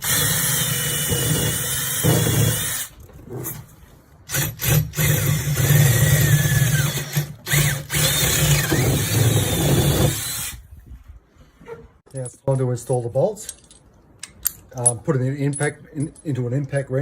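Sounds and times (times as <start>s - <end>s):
power drill boring into wood: 0.0s - 2.9s, 4.3s - 10.6s.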